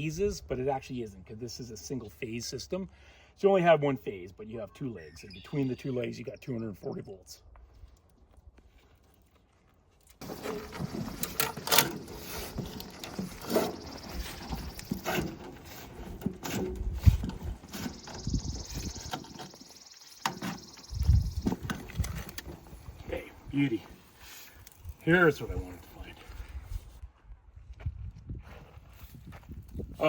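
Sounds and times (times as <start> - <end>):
tools clicking and clunking: 10.2 - 20.8, 21.4 - 23.2.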